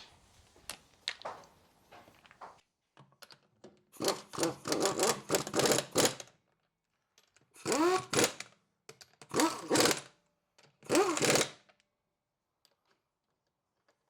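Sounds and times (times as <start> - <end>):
impact wrench rattling: 10.9 - 11.4.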